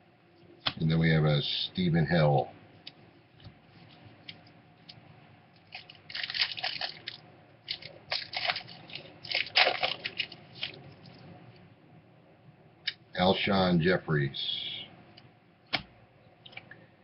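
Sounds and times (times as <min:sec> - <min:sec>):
foil wrapper crinkling: 0:05.6 - 0:11.2.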